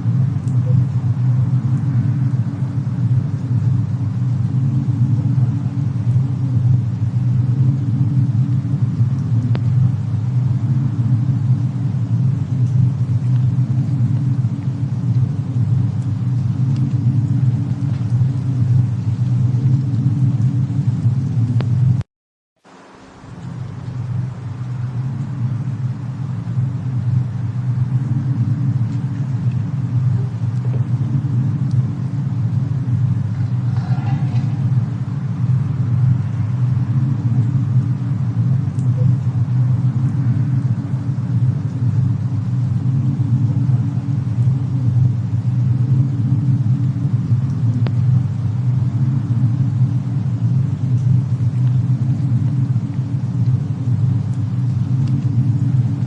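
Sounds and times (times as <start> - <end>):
faint fire crackles: 0.0 - 22.0, 22.6 - 56.0
low rumble of fire: 0.0 - 56.0
wind: 22.6 - 56.0.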